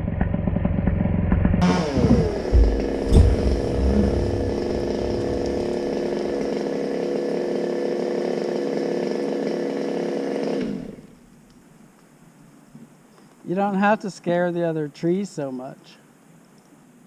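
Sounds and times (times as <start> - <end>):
heavy thumps: 1.6 - 6.8
chainsaw engine: 1.6 - 11.2.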